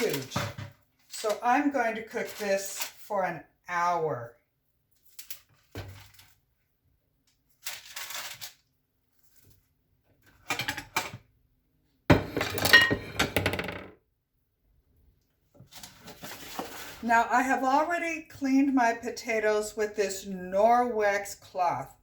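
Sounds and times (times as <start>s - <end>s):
pan and utensils clattering: 12.1s - 13.7s
soft rustle: 15.6s - 17.0s.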